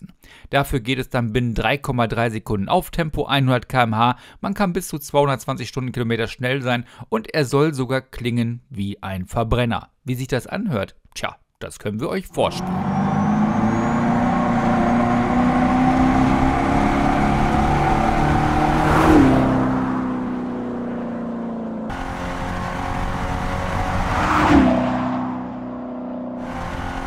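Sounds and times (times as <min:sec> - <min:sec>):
synthetic engine sound: 0:12.3 - 0:19.0, 0:21.2 - 0:24.8, 0:26.3 - 0:27.0
car passing by: 0:12.5 - 0:27.0.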